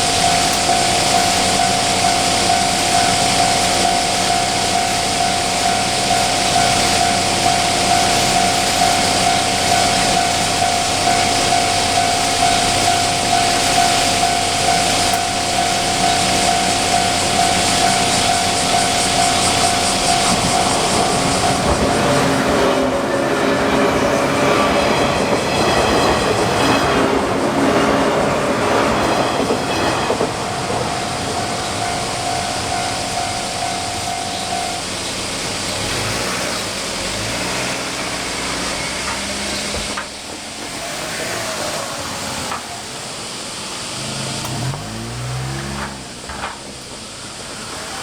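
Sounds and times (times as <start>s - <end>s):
level crossing warning bell: 0.0s - 41.6s
steady rushing hiss: 0.0s - 48.0s.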